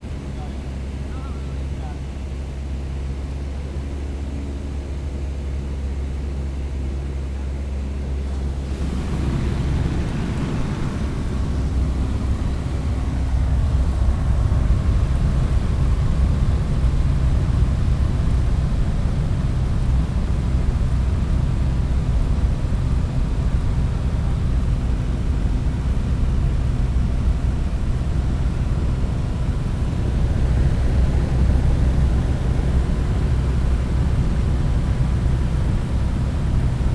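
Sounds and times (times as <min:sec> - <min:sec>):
propeller airplane engine drone: 0:00.0 - 0:36.9
rushing air: 0:08.3 - 0:16.9.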